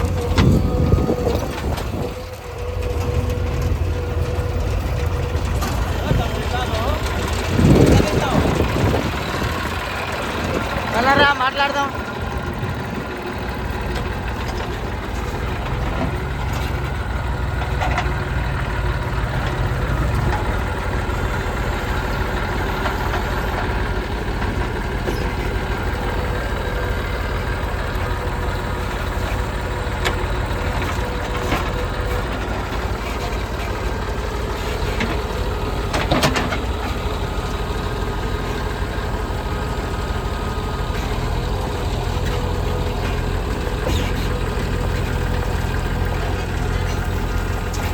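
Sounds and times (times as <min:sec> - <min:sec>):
metal knocks and clanks: 0:00.0 - 0:10.8
backhoe diesel engine running: 0:00.0 - 0:47.9.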